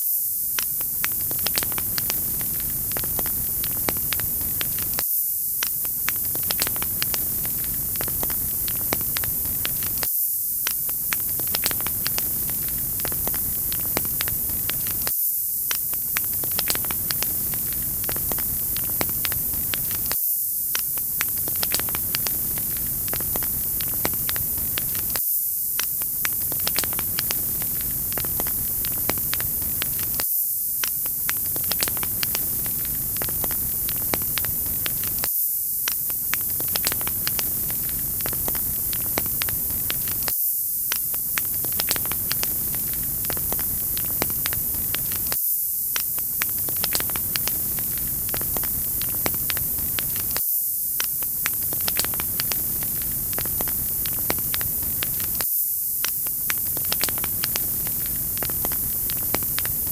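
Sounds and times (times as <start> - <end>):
fireplace fire crackling: 0.4 - 59.9.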